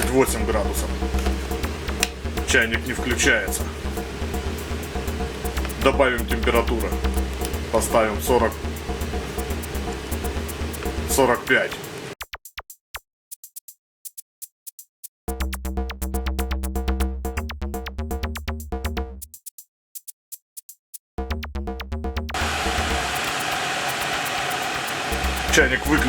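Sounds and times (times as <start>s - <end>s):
electronic music: 0.0s - 12.2s, 21.3s - 26.0s
electric kettle hissing: 0.8s - 12.2s, 22.4s - 26.0s.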